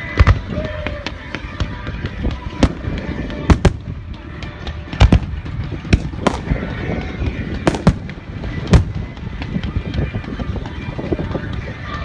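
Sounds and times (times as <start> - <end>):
continuous rumble: 0.0 - 12.0
fireworks bangs: 5.0 - 6.8, 7.5 - 9.2.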